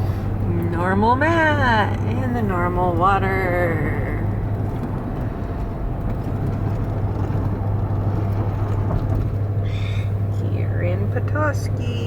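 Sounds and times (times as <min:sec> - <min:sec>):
road and engine noise in a cab: 0:00.0 - 0:12.0.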